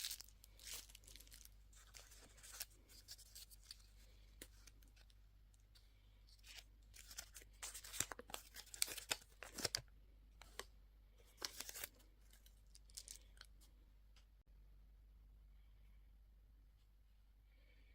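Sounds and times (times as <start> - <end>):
candy wrapper crinkling: 0.0 - 5.2, 6.3 - 9.8, 11.3 - 13.6.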